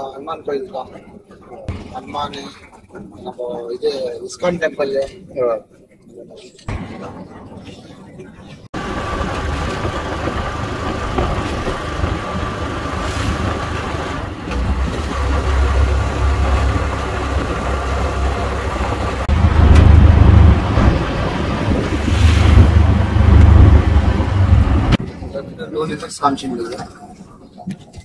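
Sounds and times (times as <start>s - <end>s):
car engine and road rumble: 8.8s - 25.1s.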